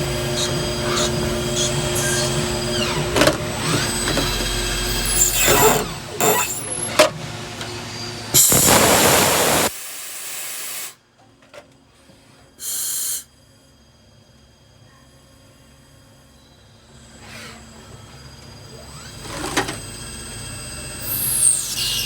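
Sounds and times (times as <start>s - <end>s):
machine running hum: 0.0s - 9.8s
compressed air hissing: 8.4s - 10.9s, 12.6s - 13.3s.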